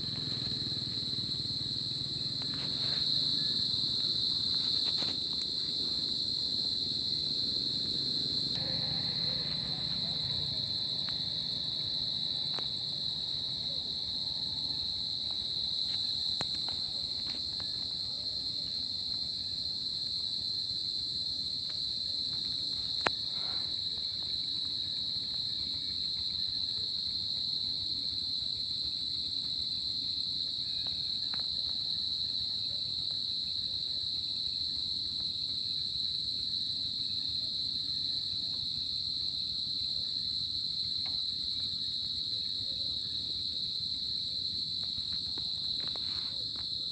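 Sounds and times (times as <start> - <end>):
crickets chirping: 0.0 - 46.9.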